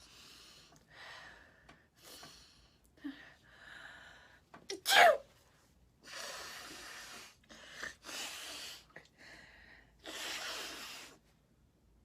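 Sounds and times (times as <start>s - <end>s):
woman breathing through congested nose: 6.0s - 11.3s.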